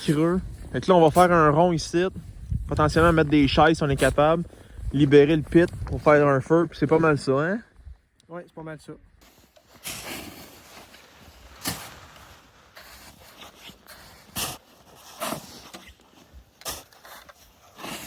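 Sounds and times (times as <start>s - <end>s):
snow shovel crunching snow: 9.2s - 18.0s.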